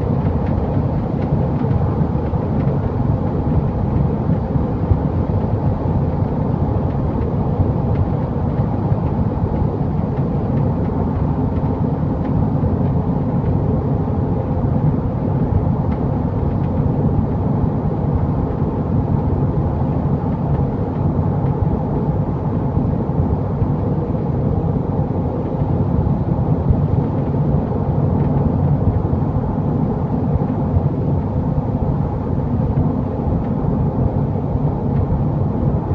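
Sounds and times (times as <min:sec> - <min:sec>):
road and engine noise: 0:00.0 - 0:35.9.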